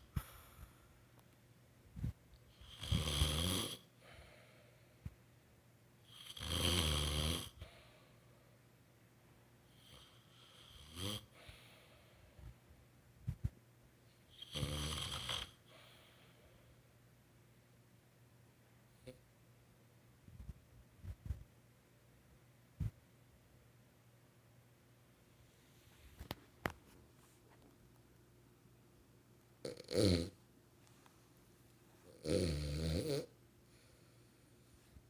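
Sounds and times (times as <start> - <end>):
woman snoring: 2.6 - 3.9, 6.1 - 7.6, 14.4 - 15.6, 29.6 - 30.3, 32.1 - 33.3.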